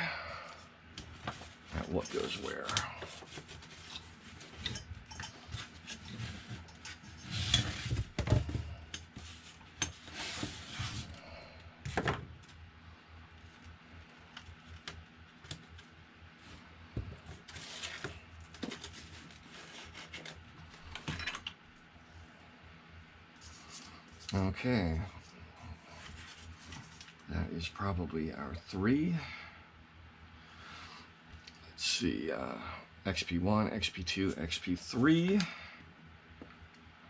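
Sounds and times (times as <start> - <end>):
cables rubbing and rustling: 1.0 - 8.2.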